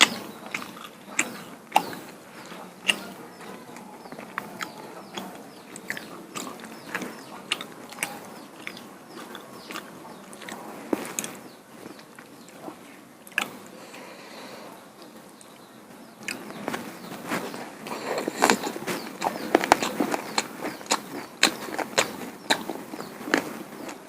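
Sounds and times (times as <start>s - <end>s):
chewing: 0.0s - 24.0s
wet mouth clicks and smacks: 4.2s - 11.4s.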